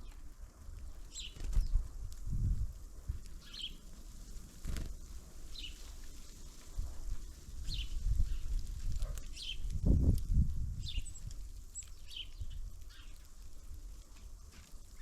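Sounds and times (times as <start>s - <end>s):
small bird calling: 1.0s - 1.8s, 3.4s - 3.9s, 7.6s - 9.7s, 10.8s - 13.3s.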